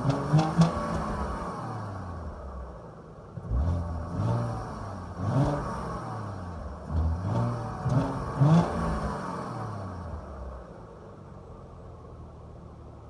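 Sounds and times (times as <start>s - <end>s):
car engine revving: 0.0s - 2.4s, 3.4s - 10.3s.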